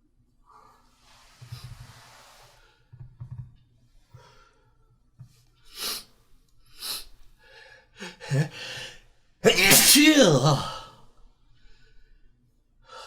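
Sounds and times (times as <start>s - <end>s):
voiced gasps: 7.0s - 10.8s
person sneezing loudly: 8.0s - 8.8s, 9.4s - 10.9s.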